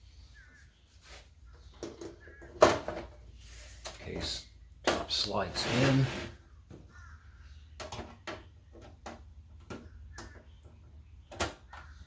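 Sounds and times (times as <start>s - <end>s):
squeaky panel scrape: 5.4s - 6.4s.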